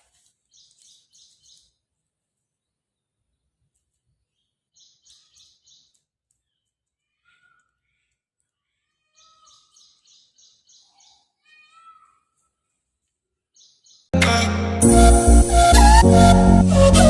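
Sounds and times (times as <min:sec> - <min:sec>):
birds chirping: 0:08.8 - 0:12.2
loud background music: 0:14.2 - 0:17.0.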